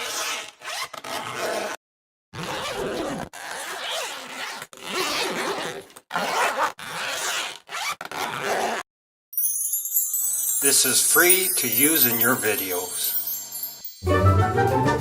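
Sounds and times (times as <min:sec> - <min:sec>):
zipper rasping: 0:00.0 - 0:01.8, 0:02.4 - 0:08.8.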